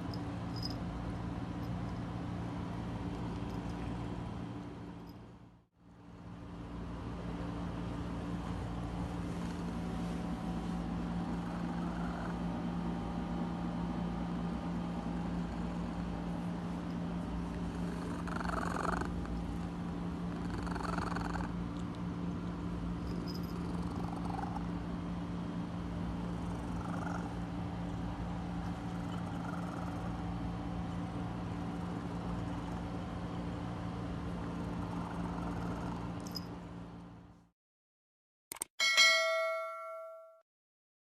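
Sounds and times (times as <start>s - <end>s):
cat purring: 11.2s - 12.4s, 17.5s - 19.6s, 20.3s - 21.6s, 23.1s - 24.7s, 26.2s - 27.4s, 28.6s - 30.2s, 34.5s - 36.1s.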